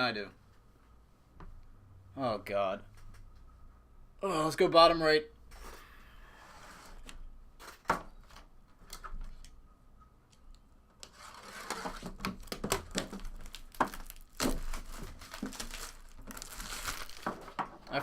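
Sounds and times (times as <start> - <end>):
card pack wrapper tearing and crinkling: 11.1 - 17.6.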